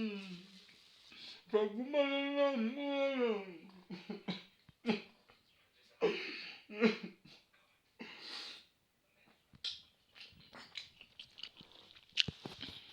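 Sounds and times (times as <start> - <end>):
chewing crunching and clicking: 9.7 - 12.9.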